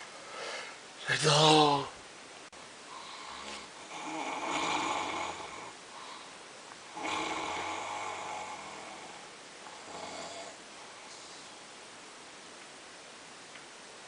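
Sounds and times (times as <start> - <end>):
quiet breathing: 0.0 - 1.0, 2.6 - 11.8
person snoring: 2.9 - 6.3, 6.9 - 11.5.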